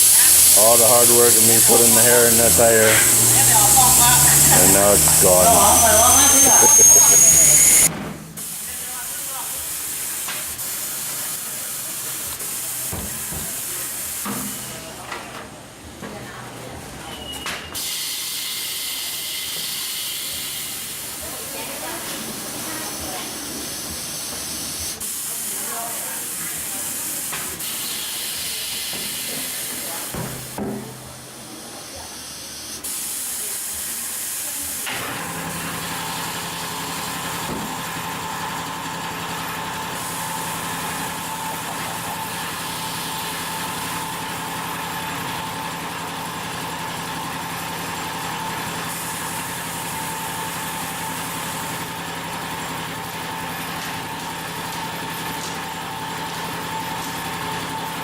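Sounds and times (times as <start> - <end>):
motor humming and whining: 0.0 - 7.9
compressed air hissing: 0.0 - 14.8, 24.6 - 30.6.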